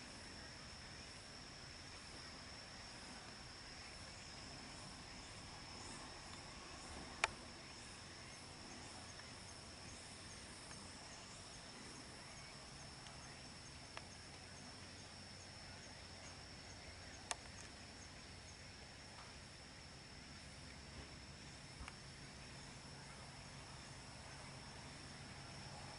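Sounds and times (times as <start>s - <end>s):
insect chirping: 0.0s - 25.9s
insects trilling: 0.0s - 25.9s.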